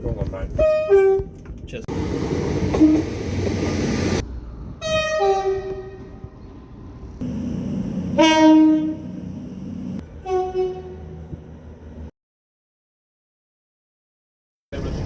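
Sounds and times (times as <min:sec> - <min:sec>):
train running noise: 0:01.3 - 0:12.1
two-tone train horn: 0:04.8 - 0:06.3, 0:07.2 - 0:11.2
low train horn blast: 0:04.8 - 0:06.4, 0:07.2 - 0:11.4.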